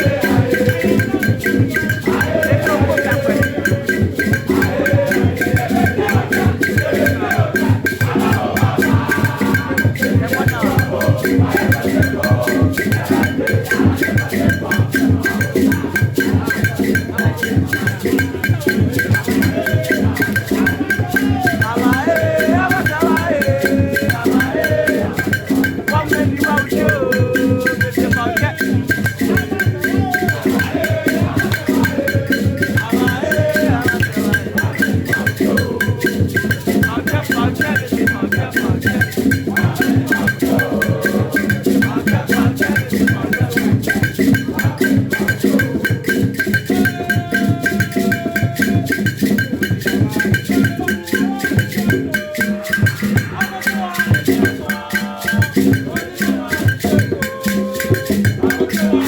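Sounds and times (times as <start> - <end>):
wavering melody line: 0.0 - 15.9
wood-block and shaker percussion: 0.0 - 59.0.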